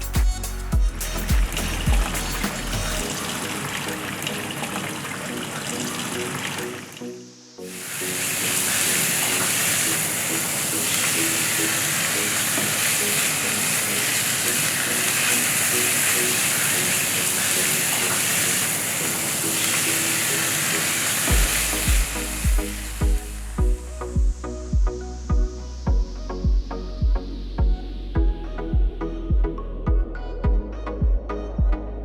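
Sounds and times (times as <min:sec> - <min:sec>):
heavy bass beats: 0:00.0 - 0:03.1, 0:21.3 - 0:32.0
light background music: 0:00.0 - 0:32.0
food sizzling in hot oil: 0:07.7 - 0:23.5.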